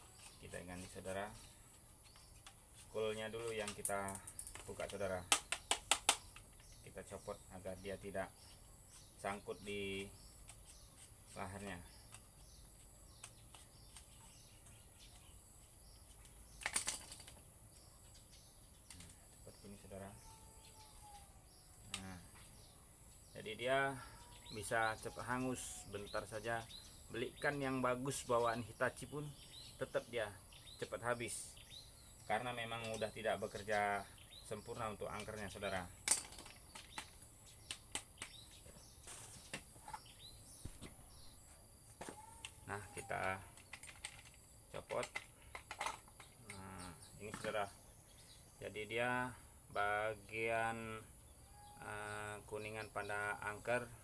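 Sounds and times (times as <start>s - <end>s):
faint bird chirps: 0.0s - 54.0s
light clicks and taps of parts: 3.3s - 6.9s, 42.1s - 46.6s
small clicks and taps of parts: 3.4s - 6.9s, 12.0s - 15.3s, 18.8s - 19.4s, 21.7s - 22.5s, 35.2s - 38.8s, 42.0s - 46.6s.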